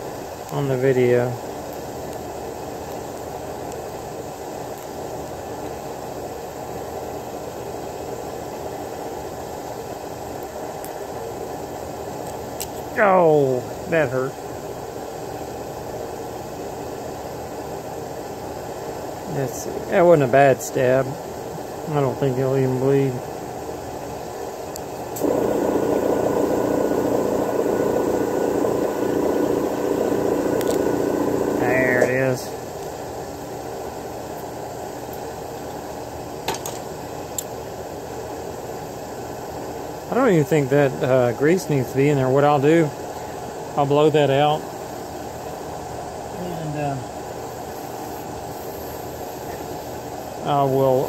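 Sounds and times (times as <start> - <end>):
steady background hiss: 0.0 - 51.0
steady mechanical drone: 24.5 - 33.3.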